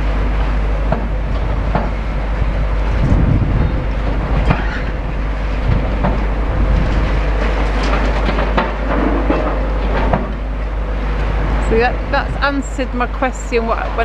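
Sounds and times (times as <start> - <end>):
excavator engine rumbling: 0.0 - 14.0
knocks and clatter of debris: 6.9 - 10.4.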